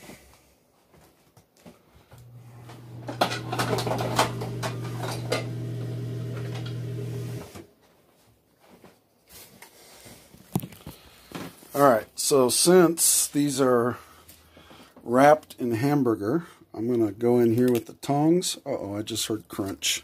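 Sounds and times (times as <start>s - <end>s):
kitchen utensils clattering: 2.7s - 7.1s.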